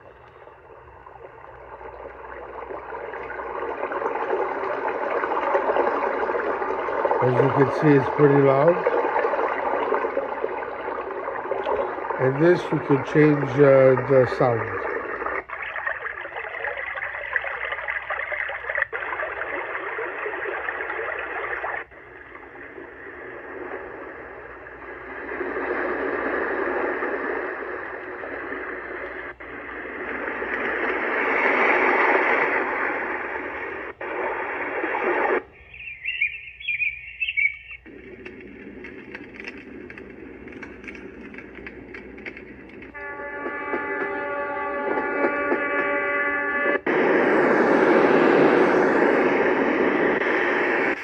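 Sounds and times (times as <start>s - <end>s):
sound machine rushing hiss: 37.9s - 51.0s.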